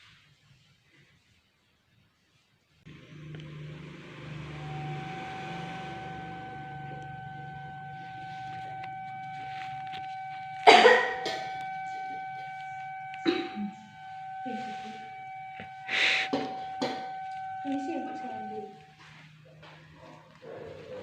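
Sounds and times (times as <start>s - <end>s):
faint high tone and hiss: 2.9s - 19.4s
woman coughing: 10.6s - 11.4s.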